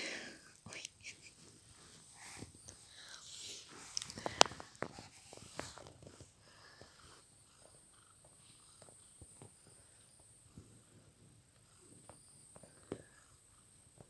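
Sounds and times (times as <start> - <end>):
cat purring: 0.0 - 14.0
sharp clicks and rustles: 2.4 - 6.3.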